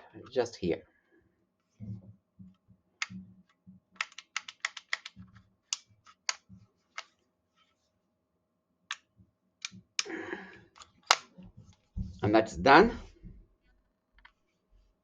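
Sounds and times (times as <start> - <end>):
soft handling knocks: 11.4 - 13.5.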